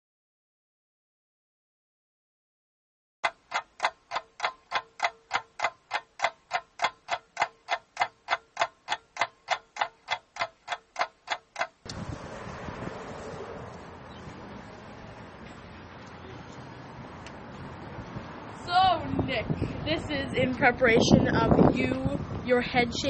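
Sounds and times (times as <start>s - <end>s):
steady ticking: 3.2s - 12.0s.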